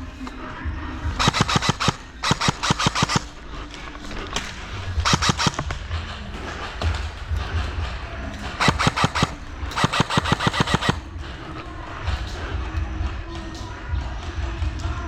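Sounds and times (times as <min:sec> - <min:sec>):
airsoft rifle firing bursts: 0:01.0 - 0:06.1, 0:08.5 - 0:11.2.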